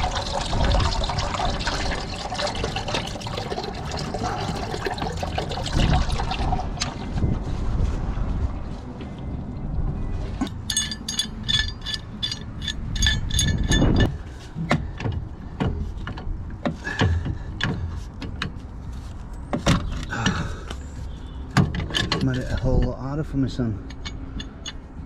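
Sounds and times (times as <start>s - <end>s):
metallic clinks of tools: 10.4s - 14.1s
ratchet spanner clicking: 10.7s - 14.1s.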